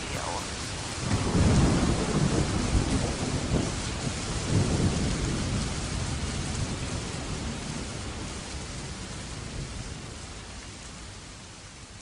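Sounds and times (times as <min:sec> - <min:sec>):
thunder rumbling: 0:00.0 - 0:05.7
steady rain: 0:00.0 - 0:12.0.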